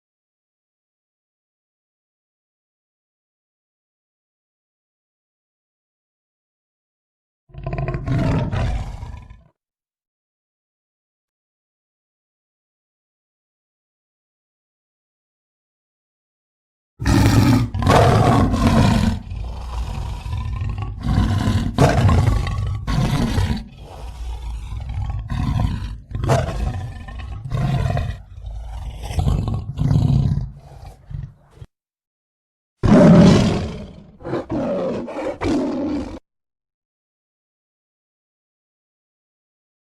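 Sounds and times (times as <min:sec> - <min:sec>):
tiger roaring and growling: 0:07.5 - 0:09.6, 0:17.0 - 0:31.7, 0:32.8 - 0:36.2.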